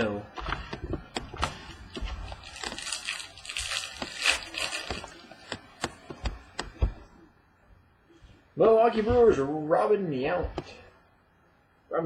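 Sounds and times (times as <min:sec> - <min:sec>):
packaging rustling and crinkling: 0:00.4 - 0:06.1.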